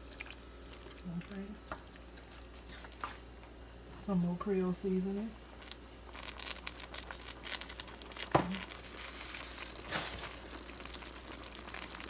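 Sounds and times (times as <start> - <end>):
seasoning container crinkling: 5.6 - 12.0.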